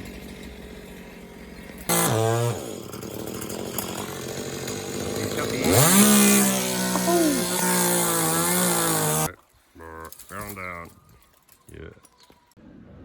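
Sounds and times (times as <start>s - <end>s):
chainsaw revving: 0.0s - 9.3s.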